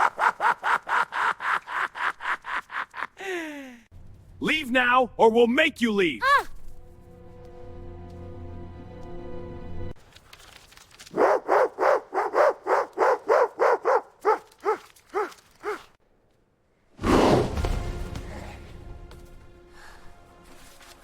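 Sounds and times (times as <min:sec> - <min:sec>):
dogs barking: 0:11.2 - 0:15.9.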